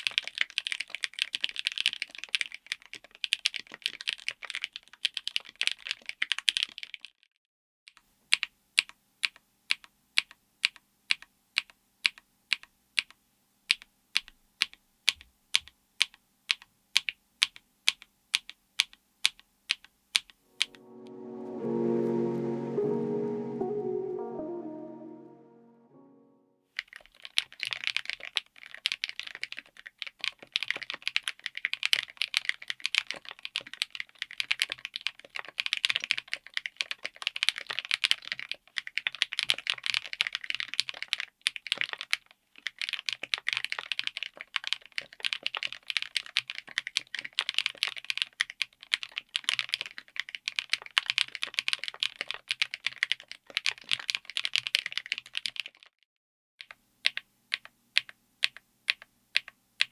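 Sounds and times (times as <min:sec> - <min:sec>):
fast typing on mechanical keyboard: 0:00.0 - 0:07.1, 0:08.3 - 0:20.4, 0:26.8 - 0:55.9, 0:56.6 - 0:59.9.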